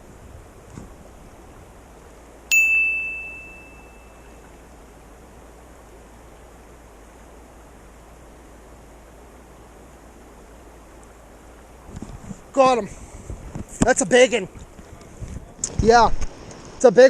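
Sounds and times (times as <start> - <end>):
creek water rushing: 0.0 - 17.0
bright bell ding: 2.5 - 4.4.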